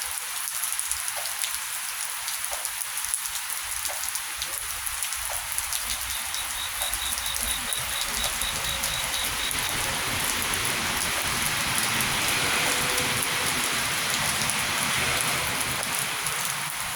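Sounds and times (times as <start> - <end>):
steady rain falling: 0.0 - 16.9
drops ticking on a surface: 5.1 - 10.5
faint high pulsing: 5.8 - 11.6.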